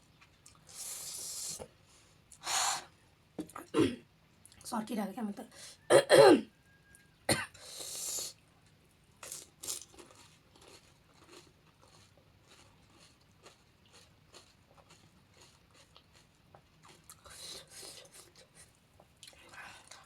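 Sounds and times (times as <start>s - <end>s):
crunchy food being chewed: 0.0s - 0.9s, 8.3s - 20.0s.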